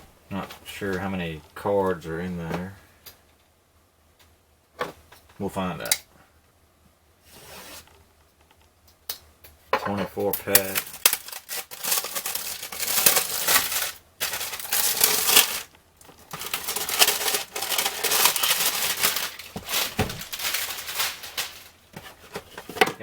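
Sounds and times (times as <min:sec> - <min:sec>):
plastic wrapping crinkling and tearing: 0:10.4 - 0:23.0.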